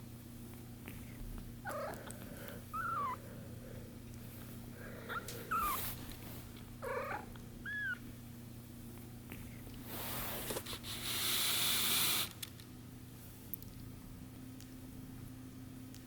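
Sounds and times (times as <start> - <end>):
kittens mewing: 1.6 - 3.5, 4.9 - 6.0, 6.8 - 8.0.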